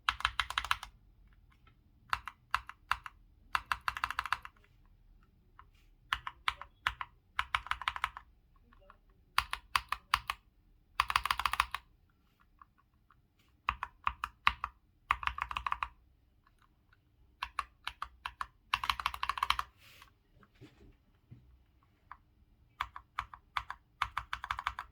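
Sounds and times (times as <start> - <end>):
mechanical keyboard keystrokes: 0.1 - 0.9, 2.1 - 4.6, 6.1 - 8.3, 9.4 - 10.4, 11.0 - 11.8, 13.6 - 16.0, 17.4 - 19.7, 22.8 - 24.9.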